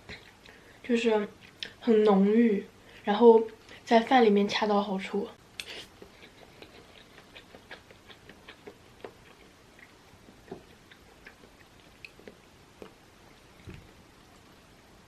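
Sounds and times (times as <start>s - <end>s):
close-up chewing with mouth clicks: 1.3s - 1.8s, 5.6s - 14.0s.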